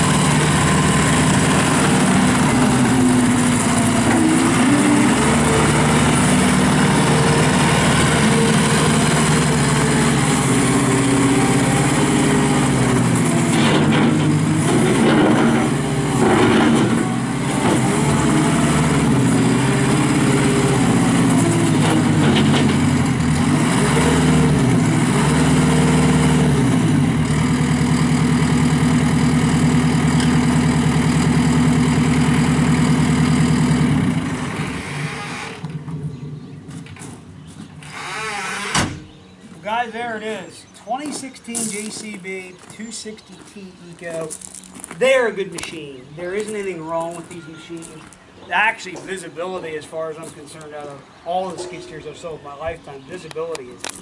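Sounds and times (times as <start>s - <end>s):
diesel engine running: 0.0s - 54.0s.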